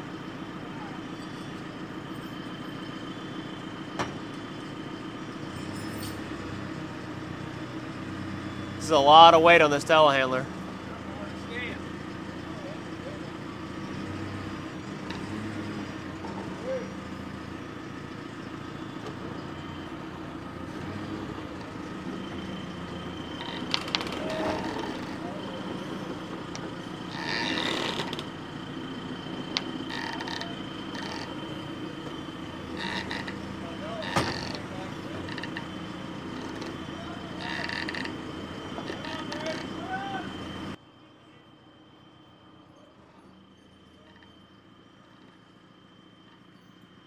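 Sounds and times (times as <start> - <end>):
diesel engine running: 0.0 - 47.0
thin high whine: 8.8 - 10.5.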